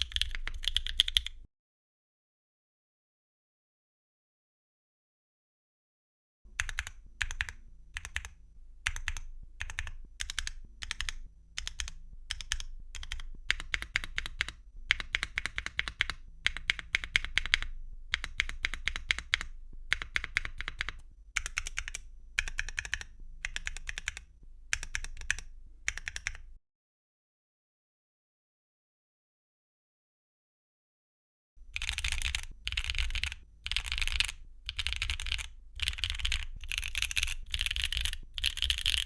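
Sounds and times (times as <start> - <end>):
mechanical keyboard keys clacking: 0.0 - 1.4, 6.6 - 24.2, 24.8 - 26.4, 31.8 - 39.0.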